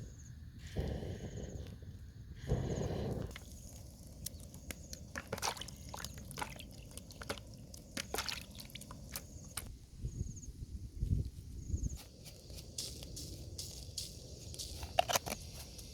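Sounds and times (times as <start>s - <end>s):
wet squishes of raw food: 3.3s - 9.7s.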